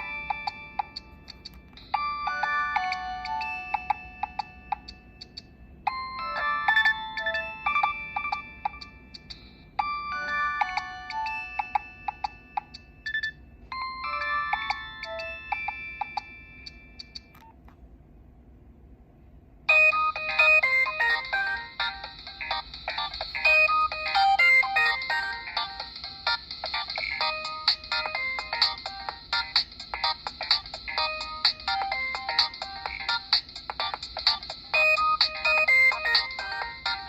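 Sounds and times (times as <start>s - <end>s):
busier ringtone: 0.0s - 17.4s, 19.7s - 37.0s
electronic ringtone melody: 0.0s - 17.4s, 19.7s - 37.0s.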